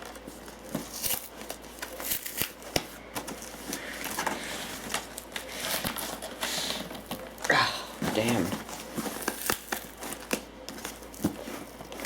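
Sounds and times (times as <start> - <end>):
hands tearing box wrapping: 0.0 - 2.9, 8.1 - 12.0.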